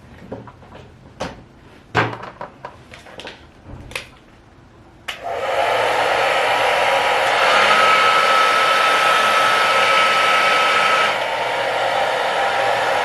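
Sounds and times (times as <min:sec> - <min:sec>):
hair dryer blowing: 0:05.1 - 0:13.0.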